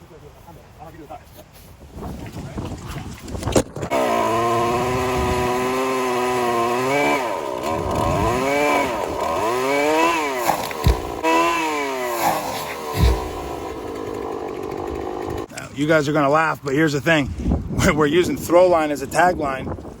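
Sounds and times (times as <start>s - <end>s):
chainsaw revving: 3.9s - 15.6s
low thumps: 10.0s - 11.6s, 12.2s - 15.4s.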